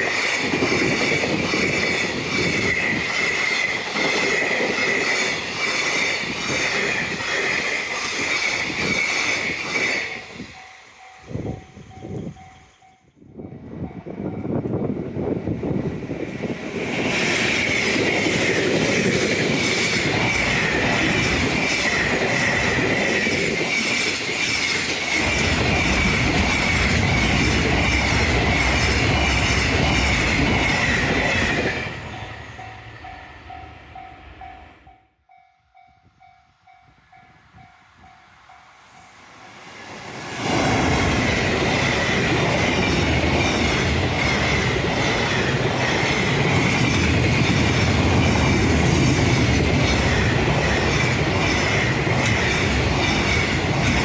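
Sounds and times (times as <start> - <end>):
freight train passing: 0.0 - 54.0.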